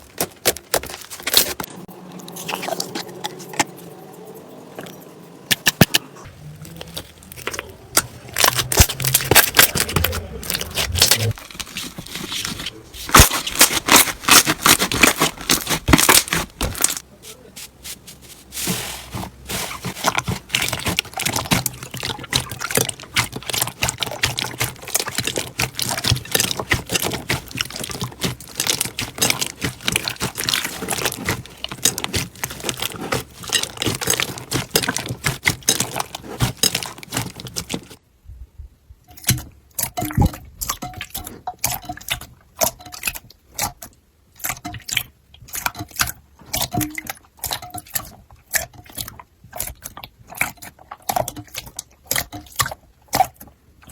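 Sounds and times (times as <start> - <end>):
slime crackling and popping: 6.6 - 17.0, 17.9 - 38.0.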